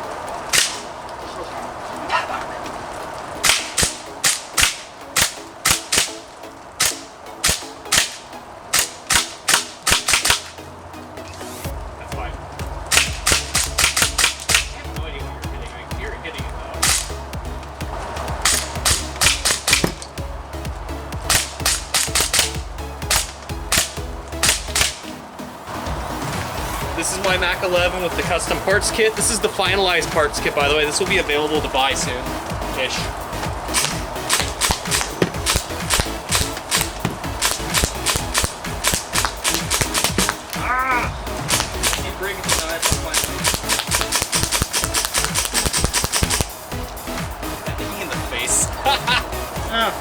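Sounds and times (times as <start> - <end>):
faint background music: 0.0 - 50.0
airsoft gun shots: 0.5 - 0.9, 3.4 - 6.2, 6.8 - 10.6, 12.9 - 14.8, 16.8 - 17.1, 18.4 - 20.1, 21.2 - 25.1, 33.7 - 40.5, 41.4 - 46.6.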